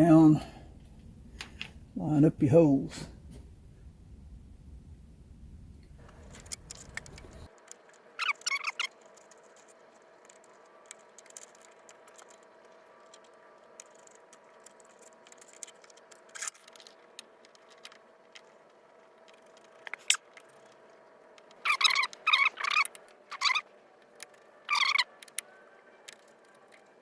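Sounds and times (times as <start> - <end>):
faint steady hum: 0.0 - 27.0
small metal parts clicking: 6.3 - 27.0.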